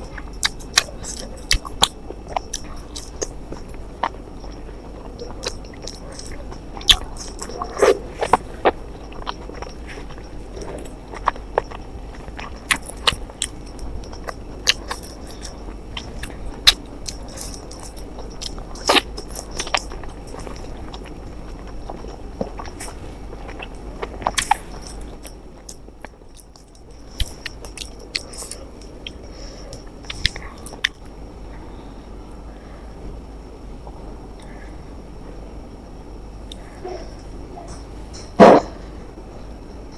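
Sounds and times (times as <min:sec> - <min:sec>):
person chewing and biting: 0:00.0 - 0:31.1
faint high whine: 0:00.0 - 0:39.9.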